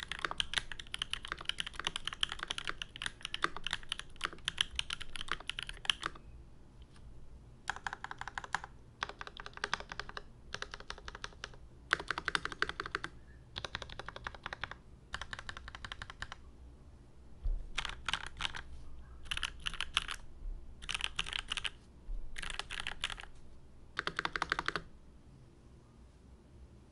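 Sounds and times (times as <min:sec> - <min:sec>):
mechanical keyboard keys clacking: 0:00.0 - 0:06.2, 0:07.7 - 0:16.4, 0:17.8 - 0:18.6, 0:19.2 - 0:20.2, 0:20.8 - 0:21.7, 0:22.4 - 0:23.3, 0:24.0 - 0:24.9.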